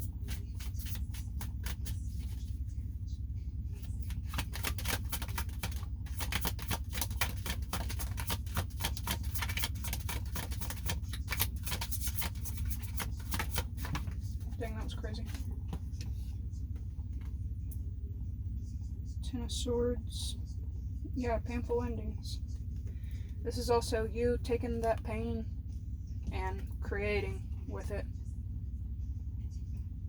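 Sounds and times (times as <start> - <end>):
cards being shuffled: 0.0 - 2.6, 3.8 - 14.6
steady low hum: 0.0 - 30.0.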